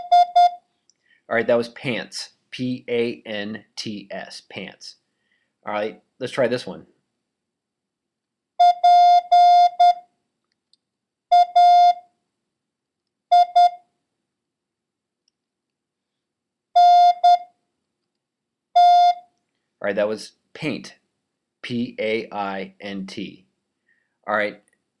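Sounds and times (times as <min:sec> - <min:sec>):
morse code beeps: 0:00.0 - 0:00.6, 0:08.6 - 0:10.0, 0:11.3 - 0:12.0, 0:13.3 - 0:13.8, 0:16.8 - 0:17.5, 0:18.8 - 0:19.2.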